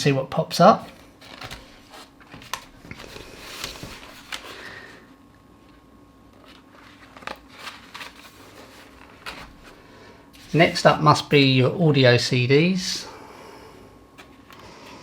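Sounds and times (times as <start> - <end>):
packaging rustling: 0.8 - 4.9, 6.3 - 10.9.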